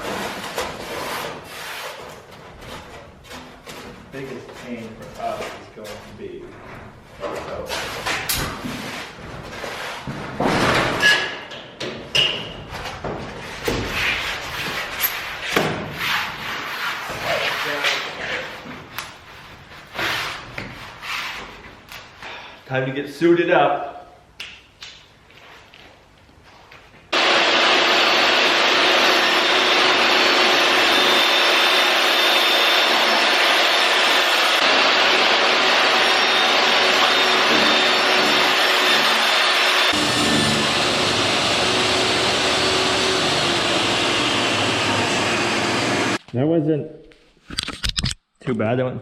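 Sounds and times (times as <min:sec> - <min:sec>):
objects knocking and scraping: 0:00.0 - 0:16.1
shop vac running: 0:27.1 - 0:46.2
table saw whining: 0:27.2 - 0:46.2.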